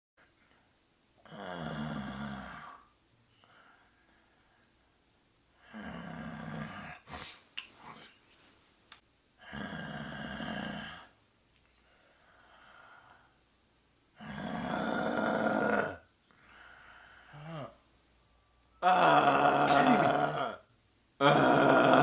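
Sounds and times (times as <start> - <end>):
person snoring: 1.2 - 2.9, 5.6 - 7.3, 9.4 - 11.2, 14.2 - 17.8, 18.8 - 22.0.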